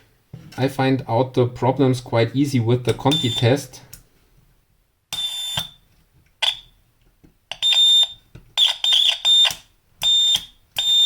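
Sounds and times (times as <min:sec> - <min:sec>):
continuity tester beeping: 0:03.1 - 0:03.6, 0:07.6 - 0:11.0.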